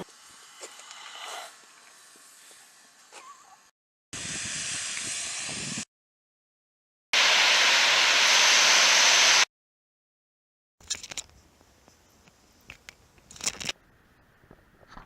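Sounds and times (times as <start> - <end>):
steady hissing noise: 0.0 - 3.1, 11.2 - 14.9.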